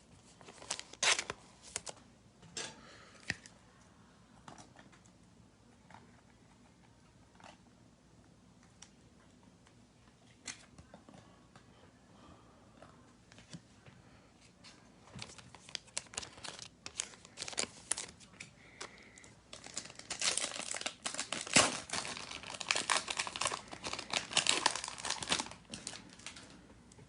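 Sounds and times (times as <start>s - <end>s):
foil wrapper tearing and crinkling: 0.5s - 1.9s, 15.2s - 18.2s, 19.5s - 26.4s.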